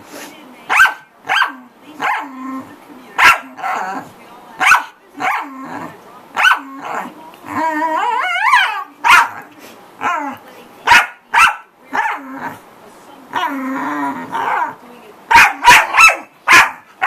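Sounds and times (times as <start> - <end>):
dog barking: 0.7 - 2.3, 3.2 - 4.0, 4.6 - 5.5, 6.4 - 6.7, 8.3 - 9.4, 10.0 - 12.2, 14.4 - 17.0
dog howling: 6.6 - 9.4.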